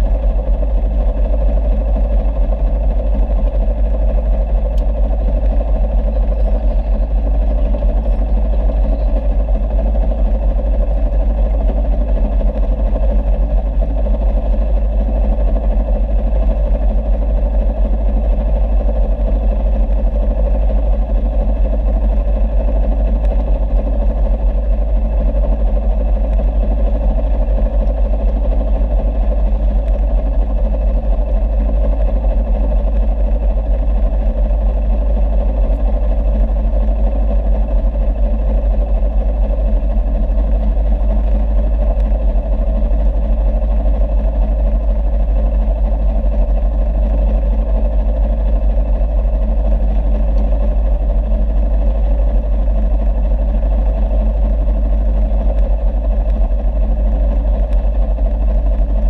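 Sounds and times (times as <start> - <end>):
boat engine droning: 0.0 - 59.0.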